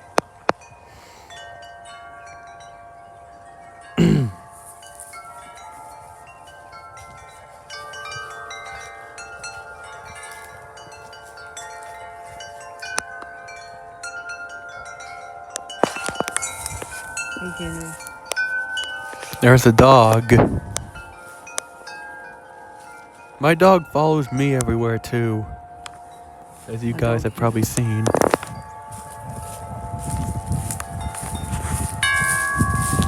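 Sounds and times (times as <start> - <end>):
wind chimes ringing: 0.0 - 33.0
gusty wind: 18.7 - 21.2, 23.4 - 33.0.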